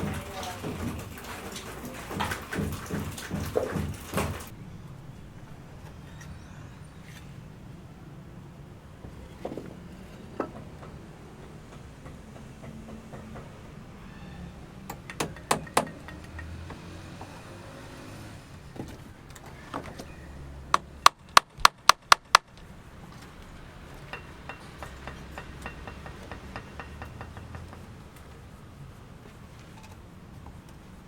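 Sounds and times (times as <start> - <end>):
hammer strikes: 14.9 - 16.5, 20.7 - 22.6, 24.1 - 27.9
light hammer tapping: 20.8 - 22.6.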